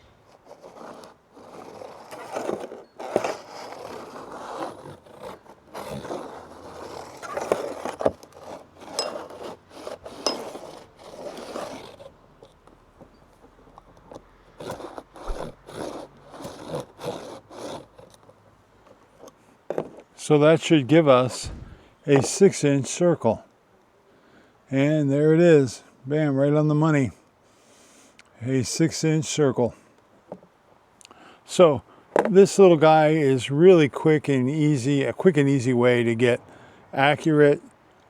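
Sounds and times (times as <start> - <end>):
compass tip scraping surface: 0.0 - 20.1, 20.8 - 23.0.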